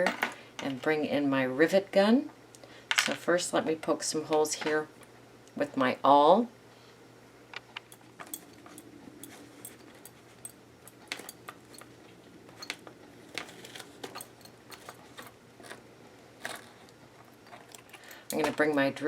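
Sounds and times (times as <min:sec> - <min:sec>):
small handling sounds: 0:07.6 - 0:19.0.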